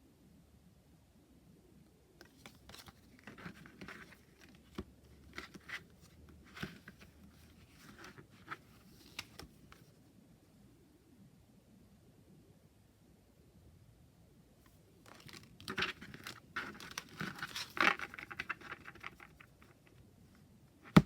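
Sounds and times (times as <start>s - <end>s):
cards rustling and tapping: 2.2s - 9.9s, 15.1s - 20.0s.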